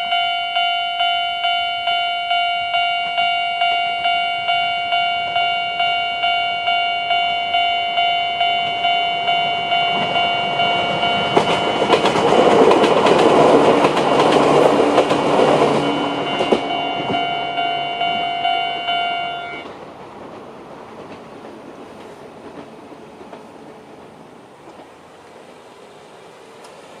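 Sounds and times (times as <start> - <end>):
level crossing electronic alarm: 0.0 - 12.8, 15.0 - 19.7
train wheels clattering: 4.5 - 25.4.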